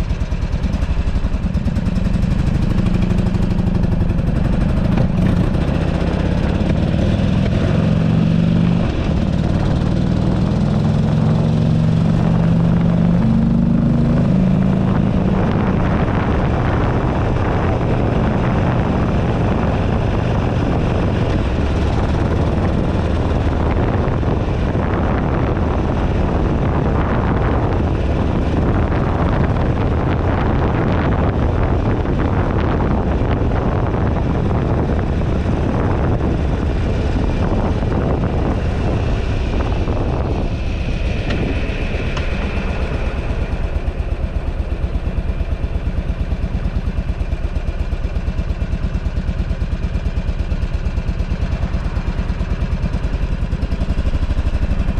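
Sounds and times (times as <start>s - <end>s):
motorcycle engine: 0.0s - 54.9s
wind buffeting camera: 0.0s - 54.9s.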